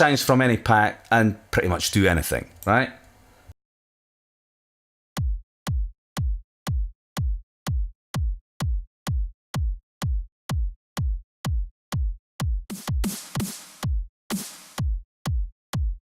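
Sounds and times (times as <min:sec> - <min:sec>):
electronic kick drum: 0:05.2 - 0:16.0.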